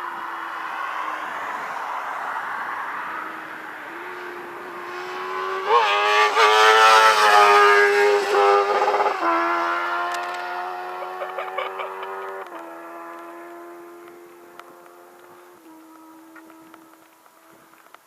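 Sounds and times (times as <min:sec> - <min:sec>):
motorcycle engine revving: 0:03.9 - 0:17.7.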